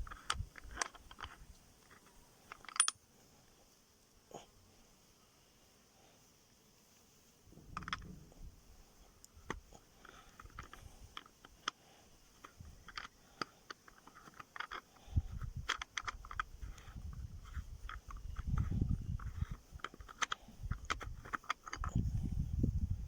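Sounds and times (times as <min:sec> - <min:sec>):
metal parts clicking and knocking: 0:00.0 - 0:03.0, 0:07.6 - 0:08.4, 0:09.4 - 0:11.8, 0:12.4 - 0:22.0.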